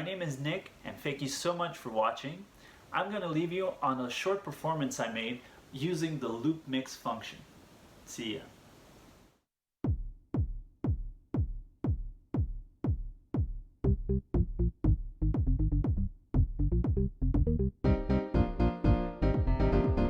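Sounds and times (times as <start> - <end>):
kick drum beat: 9.8 - 20.0
bass line: 12.9 - 20.0.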